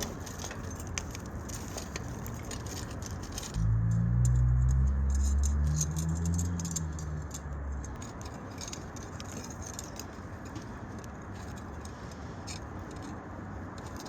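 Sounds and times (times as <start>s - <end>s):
wood fire crackling: 0.0s - 13.1s
low droning rumble: 3.3s - 8.2s.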